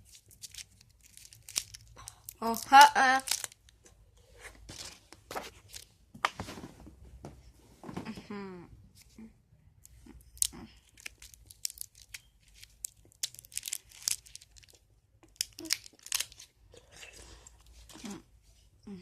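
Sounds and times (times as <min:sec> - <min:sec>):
wrappers tearing and crinkling: 0:00.0 - 0:03.8, 0:10.2 - 0:16.5.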